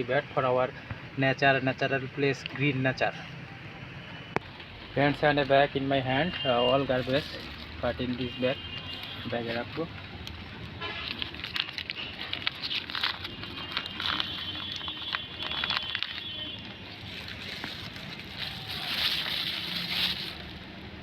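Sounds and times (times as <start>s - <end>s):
plastic bag crinkling: 7.0s - 8.3s, 11.0s - 20.8s.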